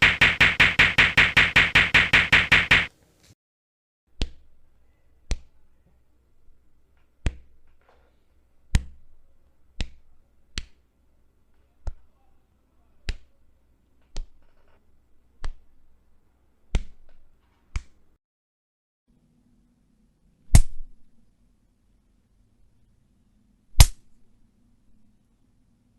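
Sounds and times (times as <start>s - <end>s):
punch hits: 0.0s - 2.9s.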